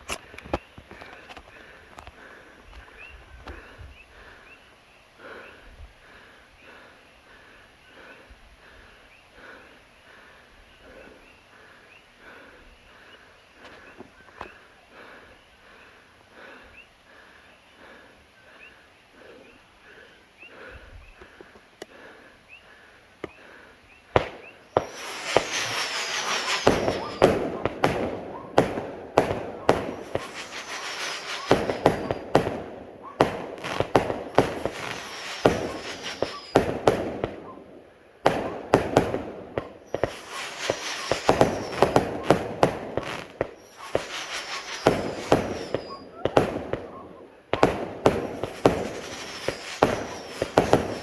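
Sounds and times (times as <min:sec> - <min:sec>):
fireworks barrage: 0:24.1 - 0:51.0
fireworks crackling: 0:24.1 - 0:51.0
falling firework whistles: 0:24.2 - 0:51.0.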